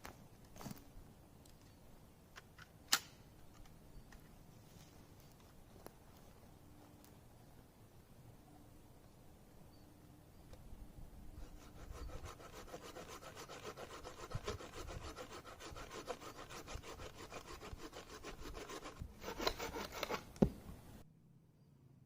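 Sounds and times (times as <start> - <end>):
fast rasping strokes: 11.4 - 20.3.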